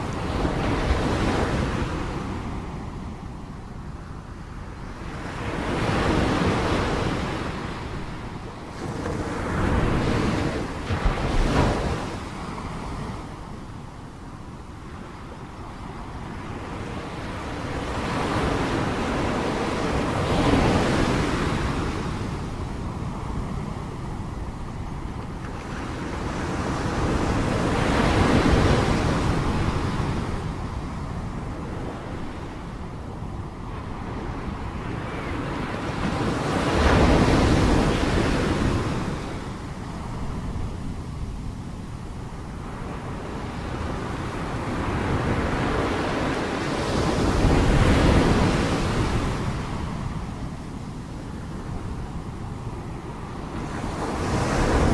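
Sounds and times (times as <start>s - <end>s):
sea waves breaking: 8.7s - 13.5s.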